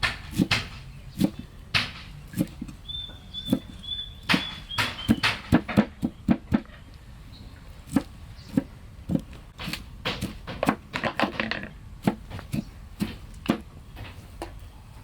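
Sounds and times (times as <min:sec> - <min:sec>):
sharp knocks or chops: 0:00.0 - 0:02.7, 0:03.5 - 0:06.7.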